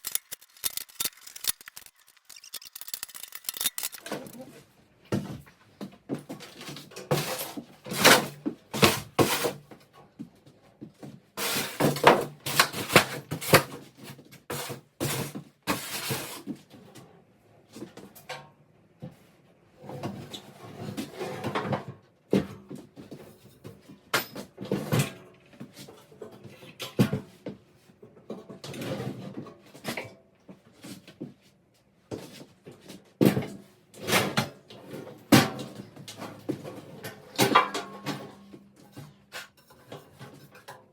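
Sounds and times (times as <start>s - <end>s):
parts knocking and scraping: 0.0s - 4.5s.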